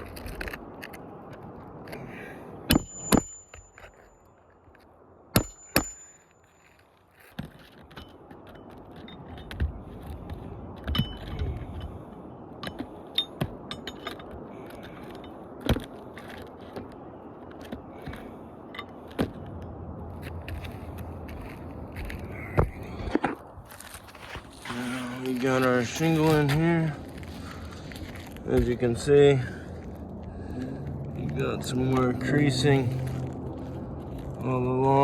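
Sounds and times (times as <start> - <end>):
shingles scraping and clicking: 0.0 - 12.0, 20.2 - 29.2.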